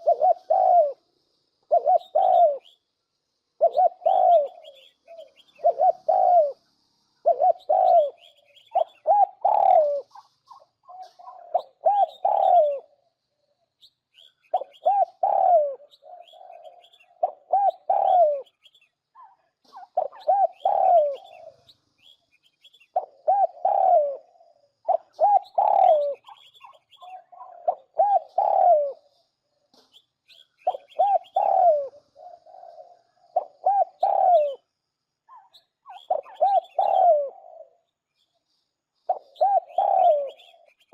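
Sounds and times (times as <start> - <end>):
dove cooing: 0.0 - 2.8, 3.6 - 6.6, 7.2 - 13.0, 14.5 - 21.8, 22.9 - 29.2, 30.6 - 34.7, 35.3 - 37.9, 39.1 - 40.9.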